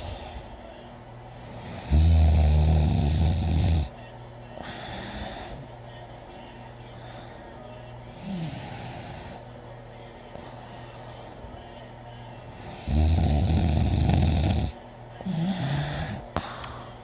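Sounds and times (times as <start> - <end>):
soft hissing breath: 0.0 - 2.2, 3.0 - 11.7, 14.2 - 17.0
person snoring loudly: 1.5 - 3.9, 4.6 - 5.7, 8.1 - 9.4, 12.6 - 16.6.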